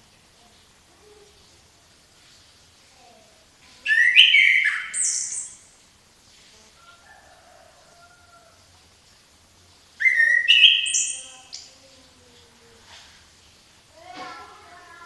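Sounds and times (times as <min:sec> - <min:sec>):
songbird singing: 0:03.6 - 0:05.8, 0:09.5 - 0:12.8.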